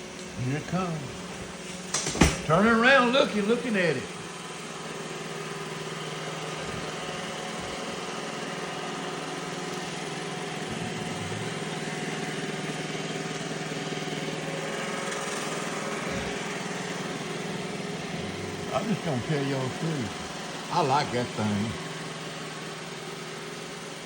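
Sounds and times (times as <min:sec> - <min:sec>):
robot vacuum whirring hum: 0:04.1 - 0:24.0.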